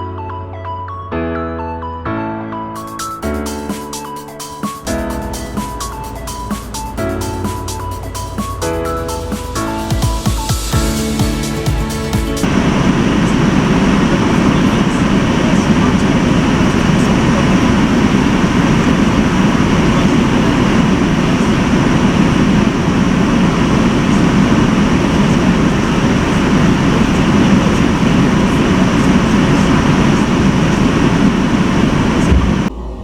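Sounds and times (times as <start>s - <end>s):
moving car rumble: 4.8s - 9.6s, 12.4s - 33.0s.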